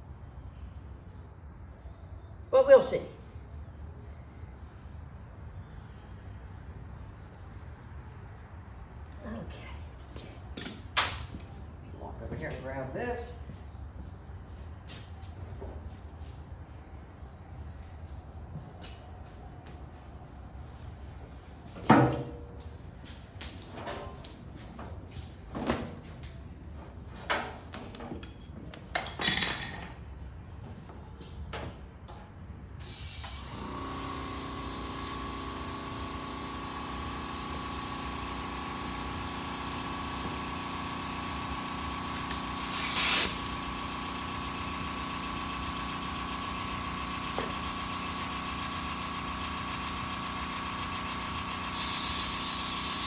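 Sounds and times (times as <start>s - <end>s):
loud hiss of air: 32.8s - 33.8s, 42.3s - 43.8s, 51.6s - 53.0s
air compressor humming: 32.8s - 53.0s.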